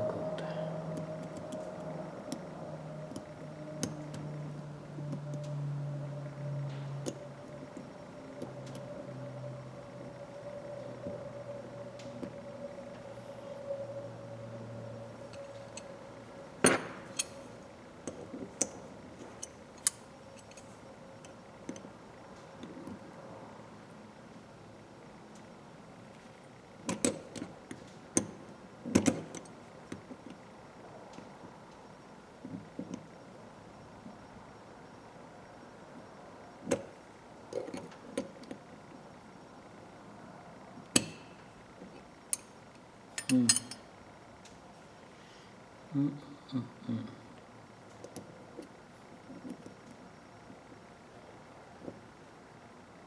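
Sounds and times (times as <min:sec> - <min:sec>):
metal tool parts clinking: 0:43.2 - 0:43.8.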